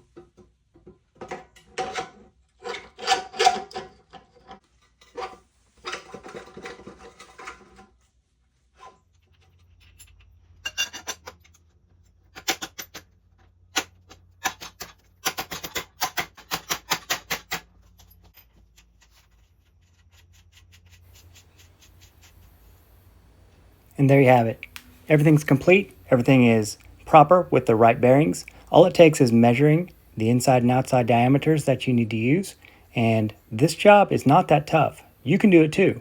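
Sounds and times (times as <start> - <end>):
metal tools clicking and rattling: 9.3 - 11.6.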